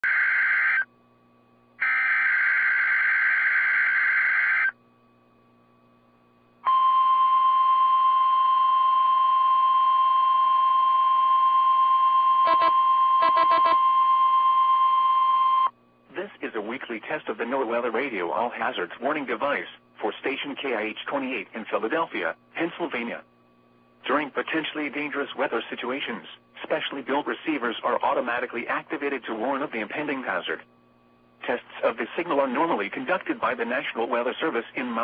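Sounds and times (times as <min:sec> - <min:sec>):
steady warning alarm tone: 0:00.0 - 0:00.9, 0:01.8 - 0:04.8, 0:06.7 - 0:15.7.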